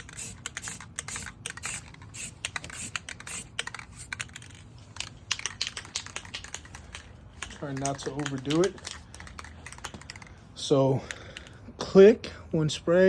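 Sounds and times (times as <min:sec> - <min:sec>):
spray paint can bursts: 0:00.0 - 0:04.5.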